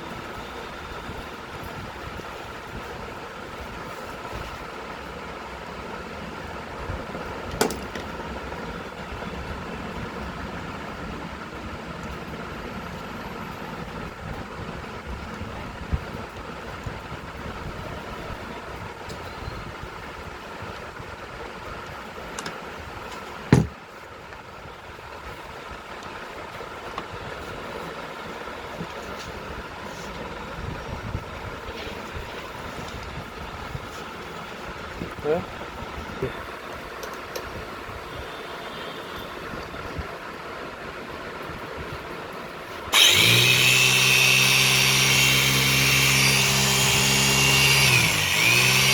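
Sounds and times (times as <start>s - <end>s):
mechanical hum: 0.0s - 48.9s
heavy thump: 23.5s - 23.8s
electric hammer motor running: 42.9s - 48.9s.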